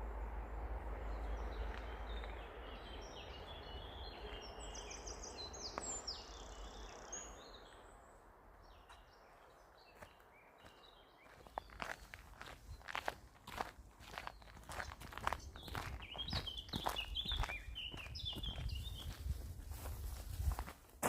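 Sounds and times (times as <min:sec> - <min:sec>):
birds chirping: 0:00.0 - 0:19.6.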